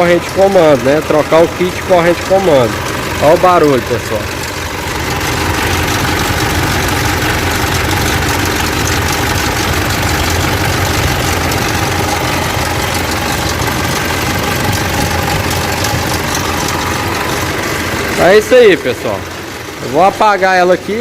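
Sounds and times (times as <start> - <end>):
diesel engine idling: 0.0 - 21.0
timing chain noise: 4.8 - 18.8.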